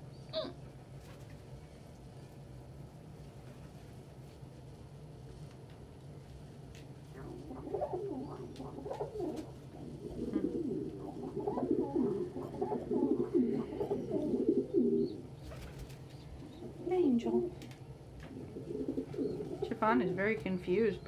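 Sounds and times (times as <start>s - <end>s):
pigeons cooing: 0.0s - 0.6s, 7.2s - 21.0s
steady low hum: 0.0s - 21.0s.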